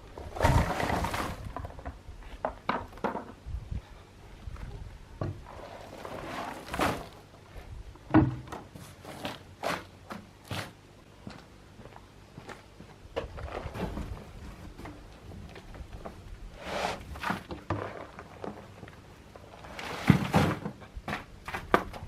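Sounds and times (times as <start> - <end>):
rushing scrapes: 5.5 - 7.2, 16.6 - 17.4
knocks and thuds: 8.1 - 8.6.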